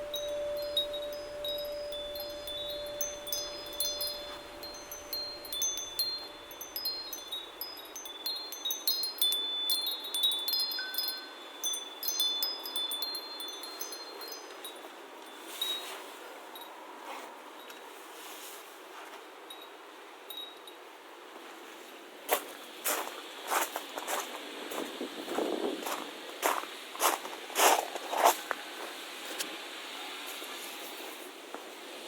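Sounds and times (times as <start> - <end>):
low held tone: 0.0 - 8.5
wind chimes ringing: 0.0 - 16.8.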